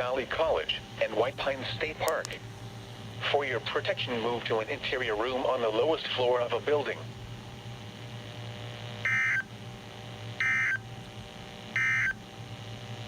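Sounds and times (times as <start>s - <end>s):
low steady hum: 0.0s - 13.0s
buzzy data tone bursts: 6.2s - 13.0s.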